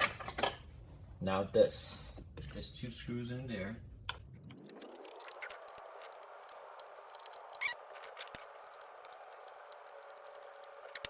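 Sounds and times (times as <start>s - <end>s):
screwdriver clicks and scrapes: 4.5s - 11.0s
short squeak: 4.7s - 11.0s.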